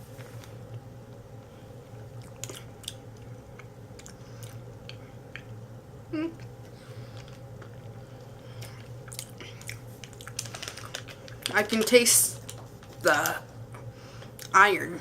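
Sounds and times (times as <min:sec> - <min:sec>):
steady low hum: 0:00.0 - 0:15.0
sachet clicking and rustling: 0:10.0 - 0:11.8.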